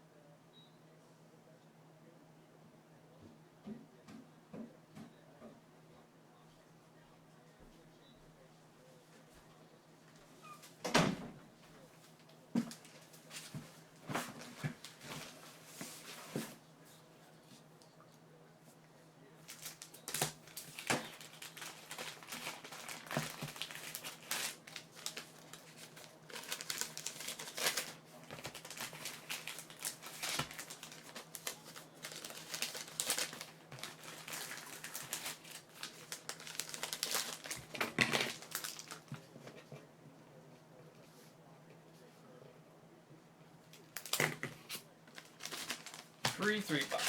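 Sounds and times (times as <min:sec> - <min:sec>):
plastic wrapping crinkling: 0:19.4 - 0:39.2, 0:43.8 - 0:44.4, 0:45.1 - 0:47.0.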